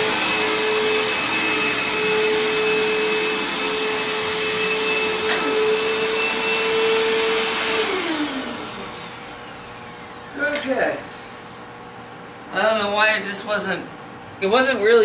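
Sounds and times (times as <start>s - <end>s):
vacuum cleaner motor whining: 0.0s - 11.4s.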